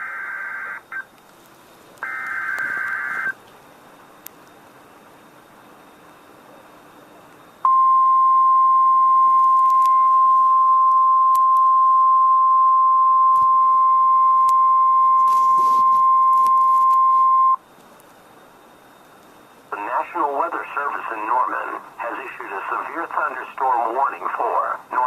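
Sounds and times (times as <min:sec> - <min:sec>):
faint radio hiss: 0:00.0 - 0:08.3, 0:15.0 - 0:25.0
loud steady alarm beep: 0:07.7 - 0:17.6.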